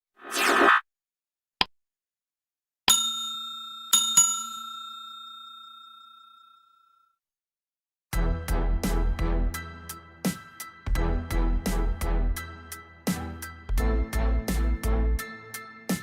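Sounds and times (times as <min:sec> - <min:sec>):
bell-like ding: 0:02.9 - 0:07.0
music: 0:08.2 - 0:16.0.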